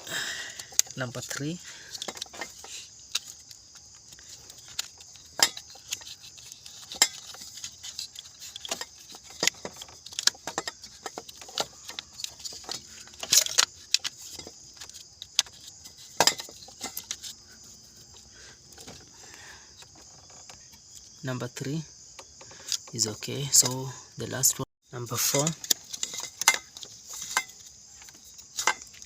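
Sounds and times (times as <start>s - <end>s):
crickets chirring: 0.0s - 29.0s
metallic clicks and clinks: 0.1s - 17.4s, 25.0s - 29.0s.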